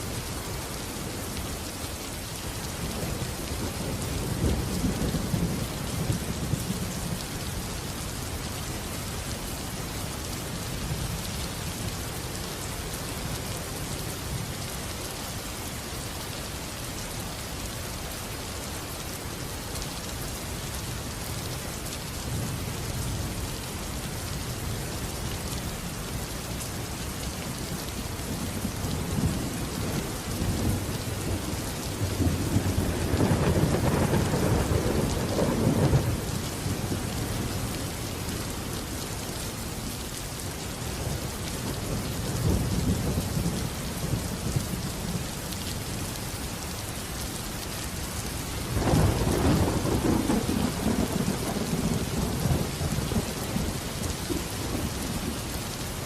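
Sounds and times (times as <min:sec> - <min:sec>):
heavy rain falling: 0:00.0 - 0:56.0
rolling thunder: 0:28.6 - 0:37.1, 0:48.7 - 0:55.1.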